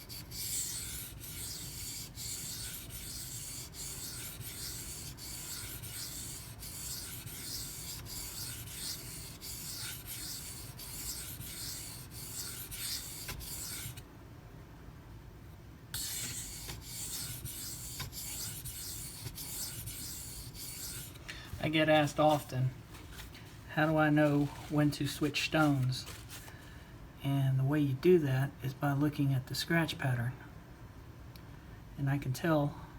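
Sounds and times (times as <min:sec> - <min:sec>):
knife scraping on sharpening stone: 0:00.1 - 0:14.0, 0:16.0 - 0:21.2.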